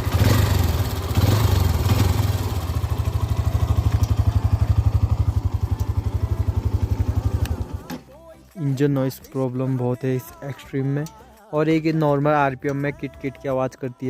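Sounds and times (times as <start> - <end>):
engine ticking: 0.0 - 7.9
motorcycle engine revving and idling: 0.0 - 8.0.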